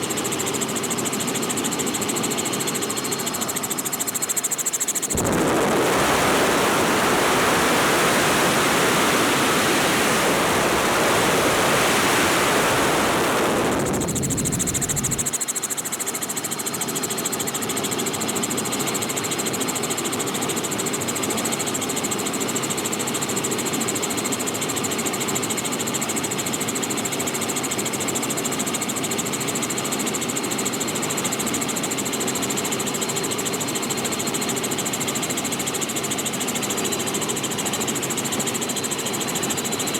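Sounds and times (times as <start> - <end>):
helicopter rotor and engine drone: 0.0 - 39.9
wind rushing on microphone: 5.1 - 15.3.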